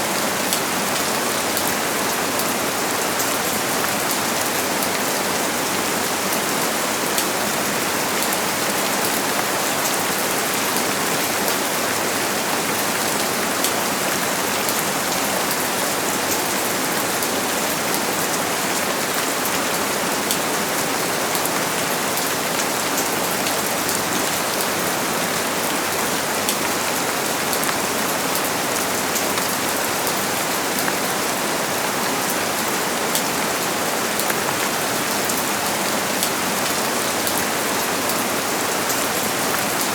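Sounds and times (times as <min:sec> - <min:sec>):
steady rain on hard surface: 0:00.0 - 0:39.9.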